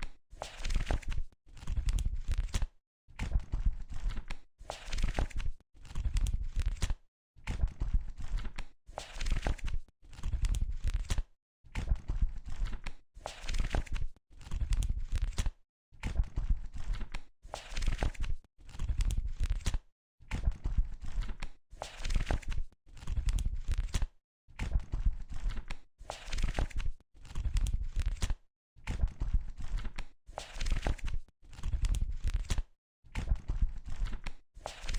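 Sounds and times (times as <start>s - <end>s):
book pages turning: 30.4s - 32.6s, 34.0s - 34.9s.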